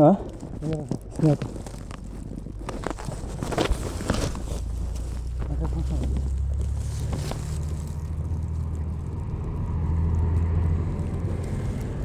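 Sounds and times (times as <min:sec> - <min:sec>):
low engine-like hum: 0:04.4 - 0:12.0.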